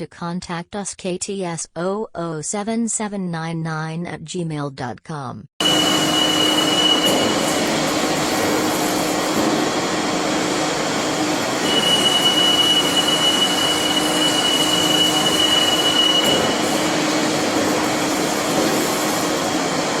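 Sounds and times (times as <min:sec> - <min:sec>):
high machine whine: 0:05.6 - 0:20.0
lathe mechanical rumble and hum: 0:05.6 - 0:20.0.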